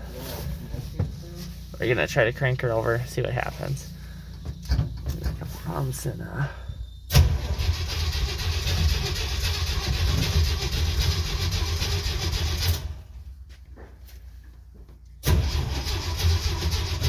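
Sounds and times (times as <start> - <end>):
starter cranking engine: 7.1 - 13.1, 15.2 - 17.0.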